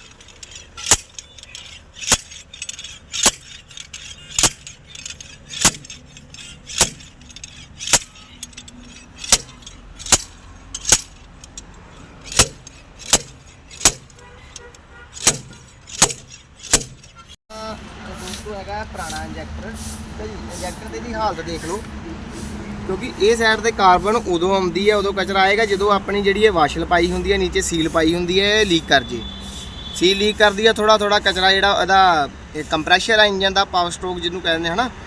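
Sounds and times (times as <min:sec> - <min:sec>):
metal-on-metal knocks: 0:00.0 - 0:17.4.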